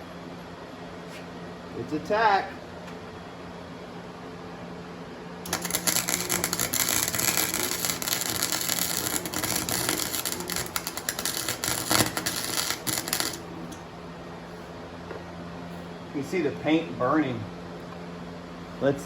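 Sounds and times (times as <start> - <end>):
welder arc crackling: 5.5 - 13.8.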